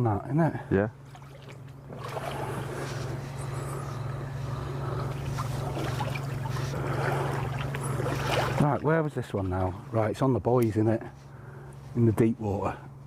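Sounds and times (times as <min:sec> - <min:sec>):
low hum: 0:00.0 - 0:13.0
wind: 0:00.0 - 0:13.0
water rushing: 0:01.1 - 0:02.8, 0:05.1 - 0:09.0.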